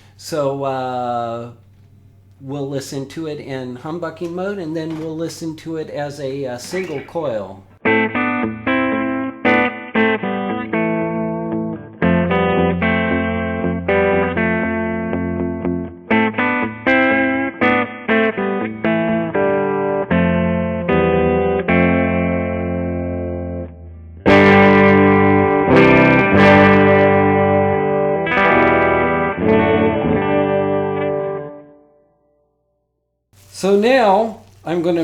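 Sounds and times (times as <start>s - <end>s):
electric guitar through amplifier: 6.1s - 31.8s.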